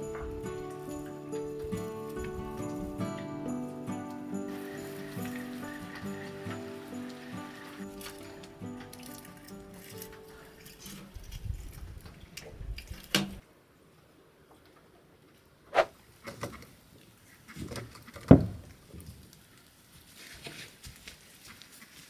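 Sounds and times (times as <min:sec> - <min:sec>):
background music: 0:00.0 - 0:11.0
faint rustling and handling noise: 0:00.0 - 0:22.0.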